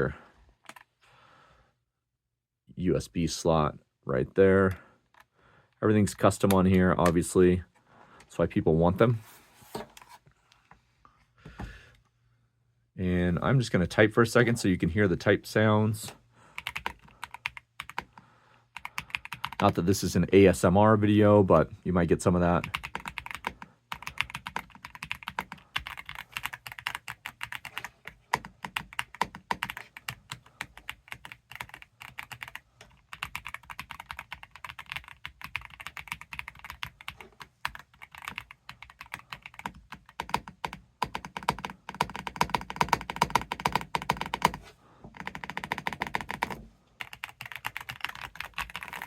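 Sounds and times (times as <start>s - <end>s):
fast typing on mechanical keyboard: 16.6s - 18.2s, 18.8s - 19.7s, 22.6s - 49.0s.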